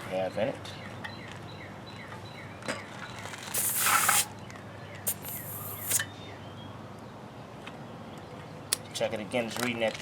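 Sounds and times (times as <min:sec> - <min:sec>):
air hissing from tire valve: 0:03.5 - 0:04.3, 0:05.1 - 0:06.1.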